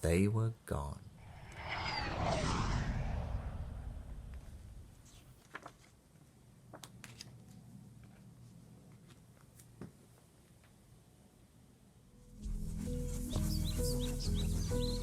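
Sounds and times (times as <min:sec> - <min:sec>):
low whooshing sound effect: 0:01.2 - 0:05.0.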